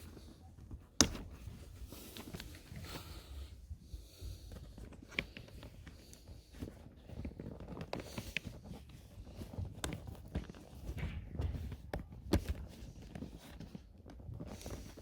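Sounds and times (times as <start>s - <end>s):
pannier bags clicking and knocking: 0.0s - 3.0s, 4.4s - 15.0s.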